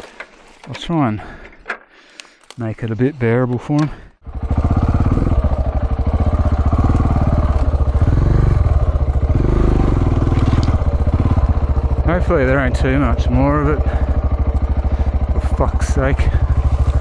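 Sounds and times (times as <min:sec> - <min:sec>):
motorcycle engine pulsing exhaust: 0:04.2 - 0:17.0.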